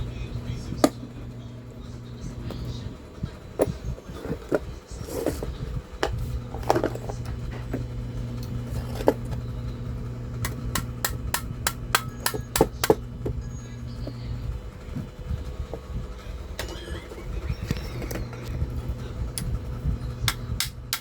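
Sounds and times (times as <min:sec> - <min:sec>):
steady low hum: 0:00.0 - 0:21.0
hand tool clicking and knocking: 0:10.4 - 0:13.0, 0:20.3 - 0:21.0.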